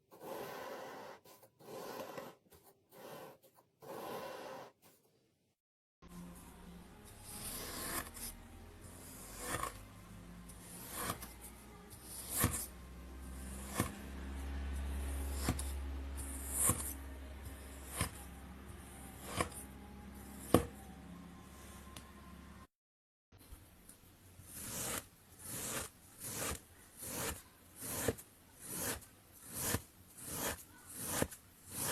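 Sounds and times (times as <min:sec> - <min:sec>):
knife scraping sand: 0:00.1 - 0:04.7, 0:07.2 - 0:09.8, 0:10.6 - 0:11.3, 0:12.0 - 0:12.7, 0:13.5 - 0:14.0, 0:19.0 - 0:19.7, 0:24.5 - 0:31.9.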